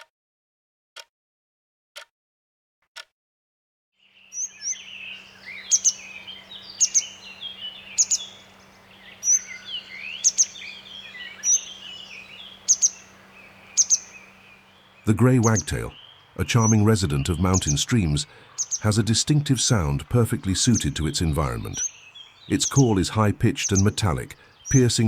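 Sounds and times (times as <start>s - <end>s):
wagtail calls: 4.2s - 25.0s
stream rushing: 4.5s - 23.0s.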